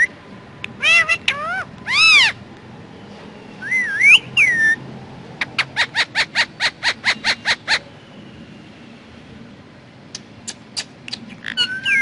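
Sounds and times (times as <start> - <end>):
parrot calling: 0.8 - 2.4, 5.4 - 7.9, 10.5 - 12.0.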